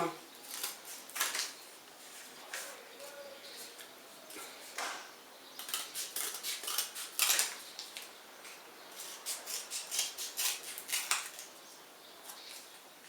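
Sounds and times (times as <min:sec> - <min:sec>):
scissors cutting cardboard: 0:05.6 - 0:07.6, 0:09.0 - 0:11.5.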